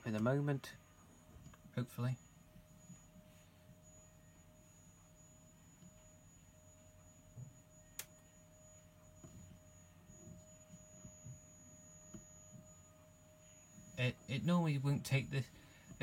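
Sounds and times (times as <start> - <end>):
faint steady hum: 0.0 - 16.0
sharp click: 8.0 - 8.2.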